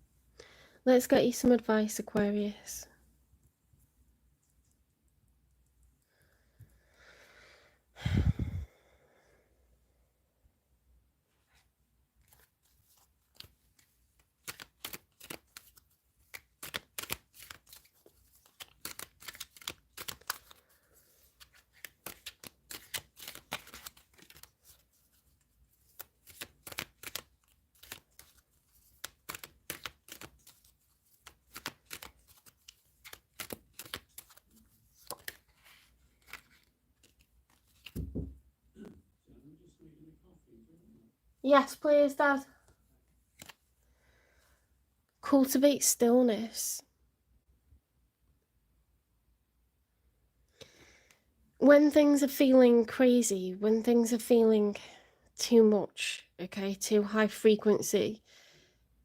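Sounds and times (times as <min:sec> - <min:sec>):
cards shuffling: 0:12.2 - 0:38.4, 0:43.3 - 0:43.6.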